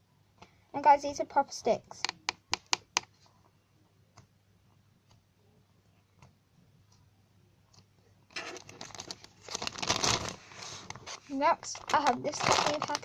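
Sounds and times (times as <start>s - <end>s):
plastic packaging crinkling: 8.3s - 13.0s.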